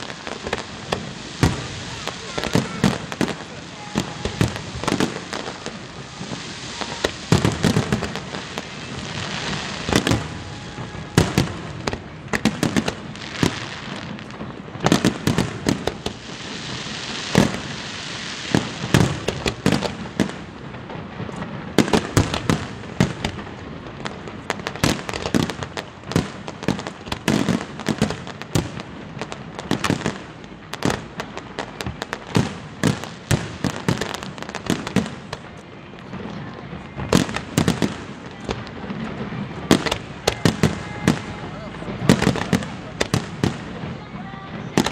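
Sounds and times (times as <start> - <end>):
firework shells bursting: 0.0 - 20.6
firework crackle: 0.0 - 44.9.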